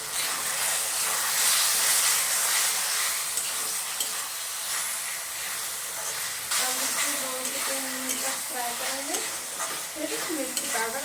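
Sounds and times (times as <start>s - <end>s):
food sizzling in hot oil: 0.0s - 11.0s.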